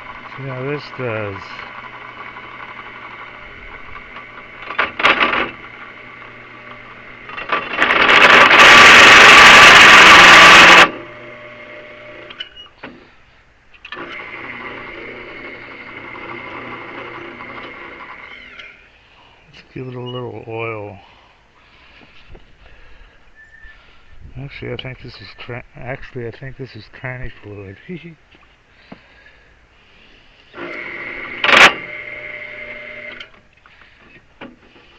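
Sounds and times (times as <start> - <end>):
drill press motor humming: 0.0 - 12.6, 13.9 - 18.8, 30.5 - 34.9
drill bit cutting metal: 4.1 - 12.3.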